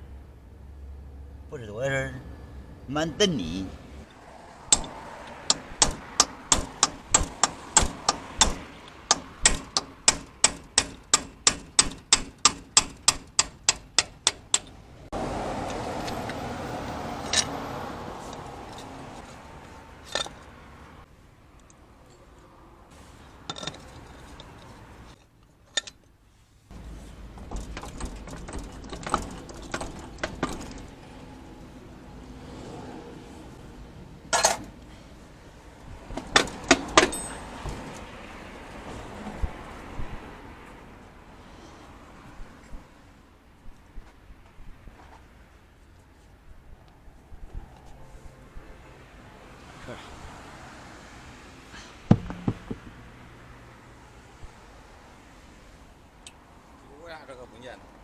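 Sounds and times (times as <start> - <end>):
metal parts knocking and clinking: 23.5 - 26.1, 27.4 - 30.9, 36.2 - 37.4, 52.1 - 52.9
hammer striking metal: 52.1 - 52.9.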